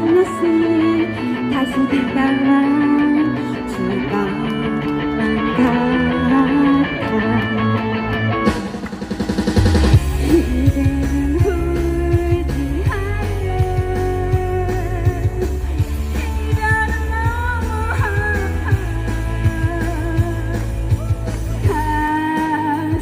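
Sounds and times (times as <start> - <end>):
person singing: 0.0 - 8.4, 10.0 - 23.0
rock-style pop song: 0.0 - 23.0
rapid drum fill: 8.5 - 10.3.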